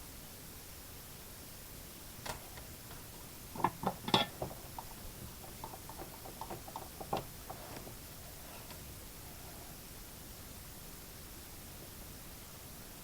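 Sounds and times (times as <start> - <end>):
steady faint hiss: 0.0 - 13.0
small tools clicking and knocking: 2.2 - 8.0.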